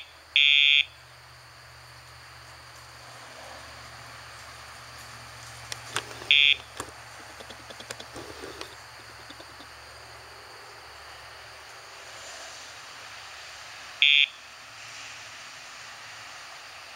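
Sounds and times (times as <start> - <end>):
sharp clicks: 5.7 - 9.7
short electronic buzz: 6.2 - 6.8.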